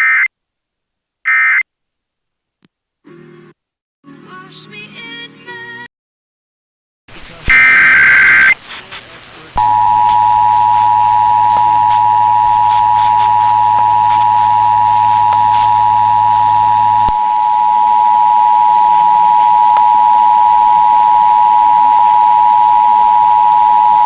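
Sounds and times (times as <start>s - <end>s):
two-tone alert signal: 9.6s - 24.0s
low hum: 9.7s - 24.0s.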